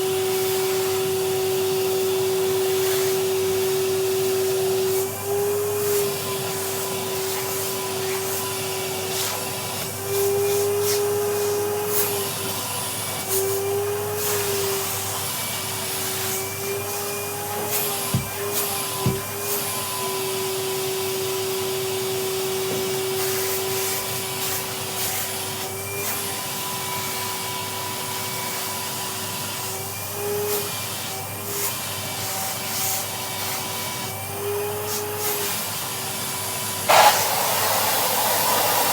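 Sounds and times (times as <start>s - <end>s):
vacuum cleaner whine: 0.0s - 38.9s
sharp knocks: 18.2s - 18.4s, 19.0s - 19.3s.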